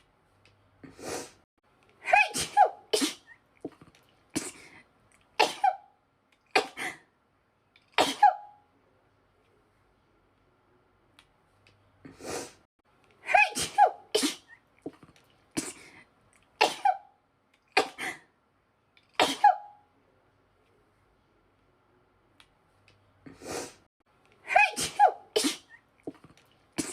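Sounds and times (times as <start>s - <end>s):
woman sneezing: 2.1s - 3.4s, 8.0s - 8.5s, 13.3s - 14.6s, 16.6s - 17.0s, 19.2s - 19.7s, 24.5s - 25.8s.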